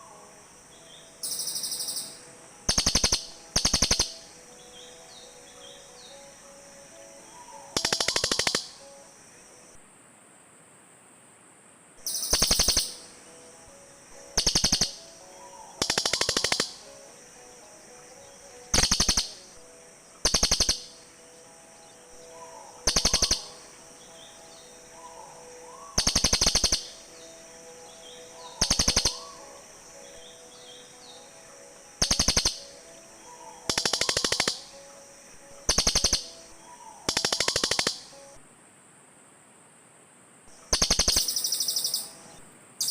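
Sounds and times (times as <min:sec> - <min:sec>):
jays giving rattling calls: 0:01.2 - 0:04.4, 0:07.4 - 0:08.8, 0:12.0 - 0:13.3, 0:14.1 - 0:17.1, 0:18.6 - 0:19.6, 0:20.2 - 0:21.2, 0:22.4 - 0:23.8, 0:25.0 - 0:27.4, 0:28.3 - 0:30.2, 0:31.8 - 0:34.8, 0:35.6 - 0:38.2, 0:40.6 - 0:42.2.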